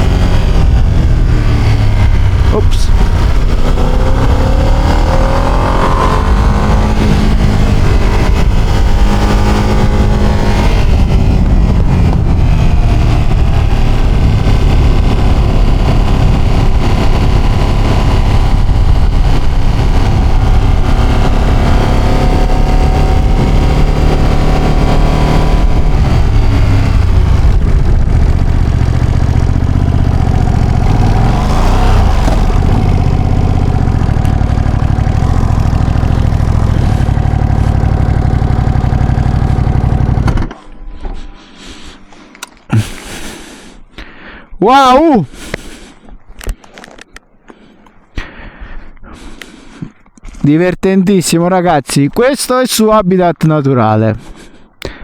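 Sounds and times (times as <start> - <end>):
motorcycle engine accelerating: 0.0 - 43.8.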